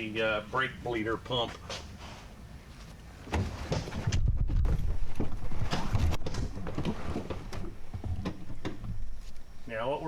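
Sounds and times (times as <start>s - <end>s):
objects being handled and moved: 1.3s - 9.6s.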